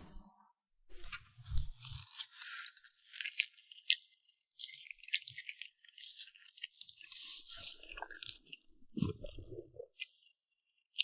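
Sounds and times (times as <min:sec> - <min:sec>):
soft crinkly scraping: 0:00.0 - 0:10.6.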